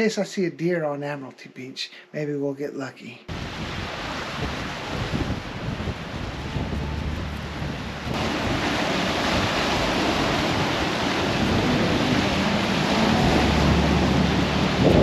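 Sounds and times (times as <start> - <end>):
strong wind on microphone: 3.3 - 15.0.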